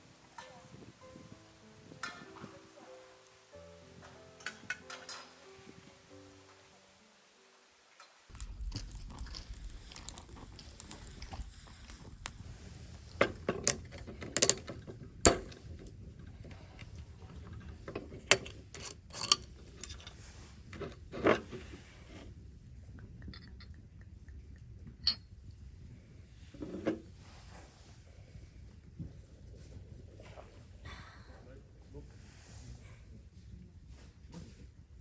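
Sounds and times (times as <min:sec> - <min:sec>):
low outdoor rumble: 0:08.3 - 0:35.0
clicks and knocks of handling: 0:13.2 - 0:21.6.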